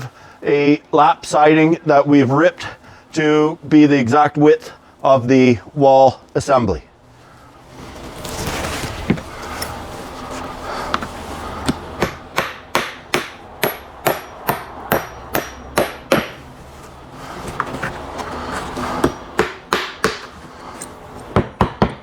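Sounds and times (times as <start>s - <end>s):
hammer striking nail: 11.7s - 16.4s, 19.0s - 20.3s, 21.3s - 22.0s.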